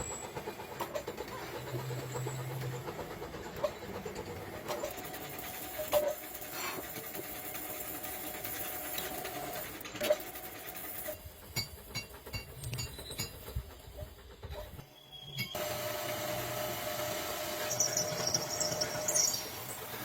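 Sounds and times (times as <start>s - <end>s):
scattered clicks and ticks: 0.0s - 14.8s
workshop machinery humming: 0.0s - 20.0s.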